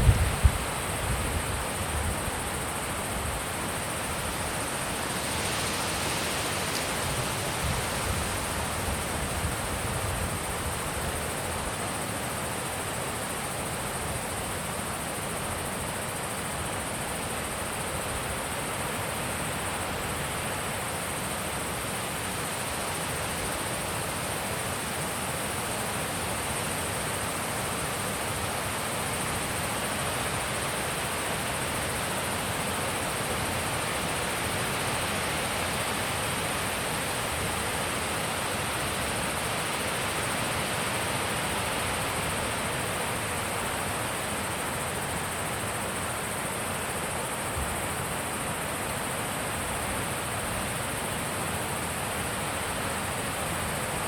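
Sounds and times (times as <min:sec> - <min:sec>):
wind gusts on microphone: 0:00.0 - 0:02.5
high wind hiss: 0:00.0 - 0:54.0.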